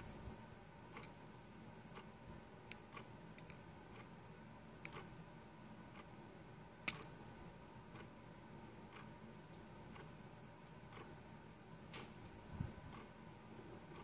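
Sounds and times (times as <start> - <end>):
small hard parts clicking: 6.8 - 7.1.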